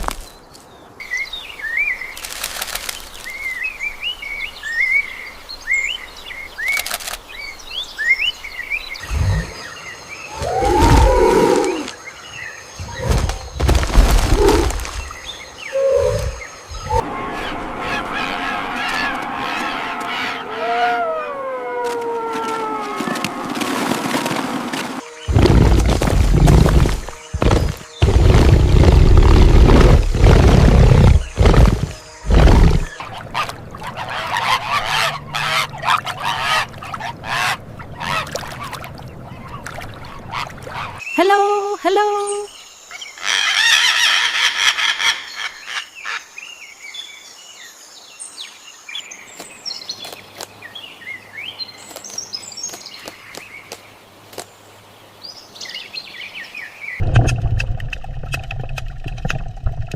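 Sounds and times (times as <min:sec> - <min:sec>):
loud low animal calls: 0:10.3 - 0:11.9
geese honking: 0:33.2 - 0:38.4.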